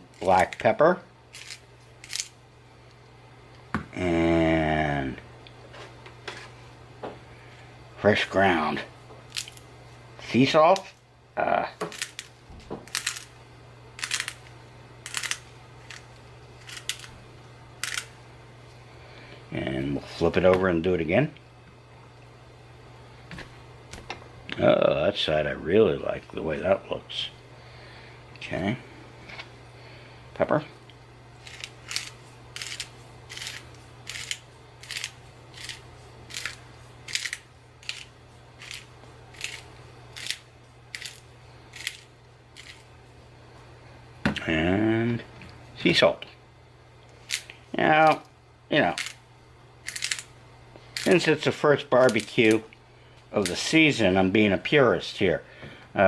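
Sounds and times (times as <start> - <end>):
salt grinder grinding: 1.3 - 2.3, 11.9 - 13.3, 14.0 - 17.2, 17.8 - 18.1, 31.4 - 42.9, 48.8 - 49.2, 49.8 - 50.3.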